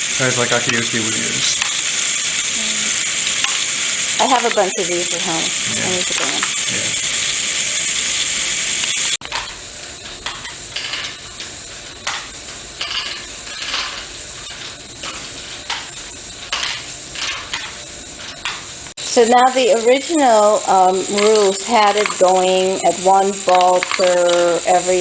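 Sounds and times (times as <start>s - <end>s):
plastic balls rattling in machine: 21.1s - 25.0s
clicks and rattles of balls: 23.2s - 24.7s.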